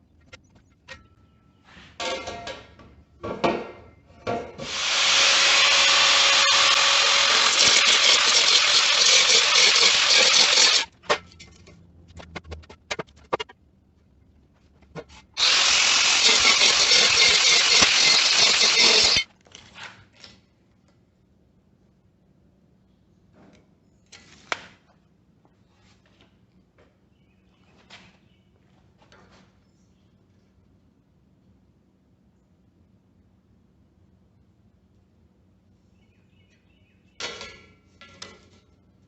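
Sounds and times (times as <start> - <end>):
power tool working wood: 4.6 - 10.9, 15.4 - 19.2.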